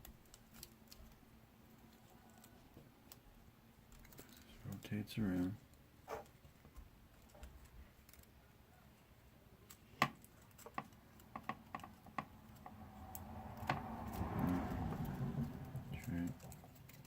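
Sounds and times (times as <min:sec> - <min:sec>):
rustling: 0:06.1 - 0:17.0.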